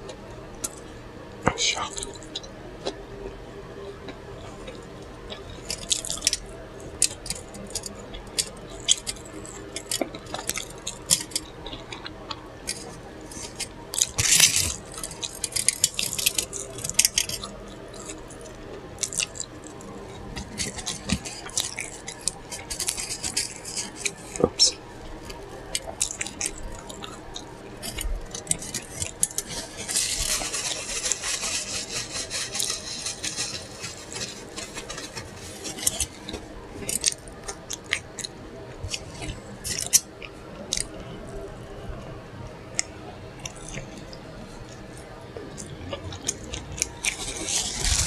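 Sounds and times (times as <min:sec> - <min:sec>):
wet chewing and lip-smacking: 0:04.6 - 0:41.0.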